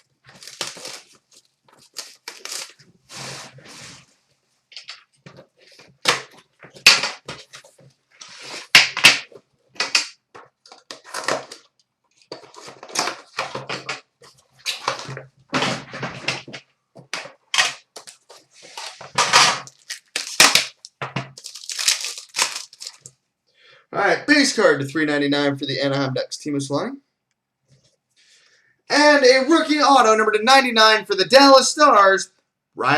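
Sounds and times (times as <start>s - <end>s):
shrink wrap crinkling and tearing: 0.0s - 3.8s, 17.2s - 23.1s.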